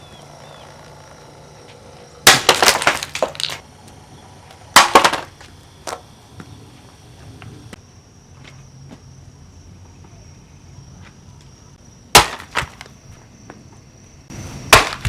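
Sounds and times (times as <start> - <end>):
plastic fan smashing: 2.2 - 3.6, 4.6 - 6.1, 12.1 - 12.9, 14.6 - 15.0.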